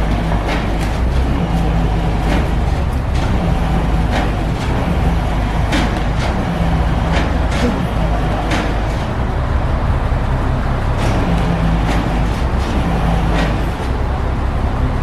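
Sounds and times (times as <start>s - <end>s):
heavy engine rumbling: 0.0s - 15.0s.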